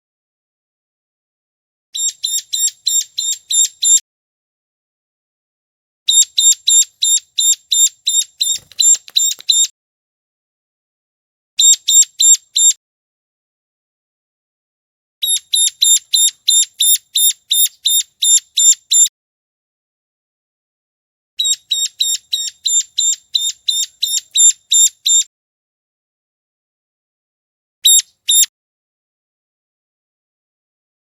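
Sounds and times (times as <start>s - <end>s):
bird calling sharp high notes: 15.2s - 19.1s, 21.4s - 25.2s.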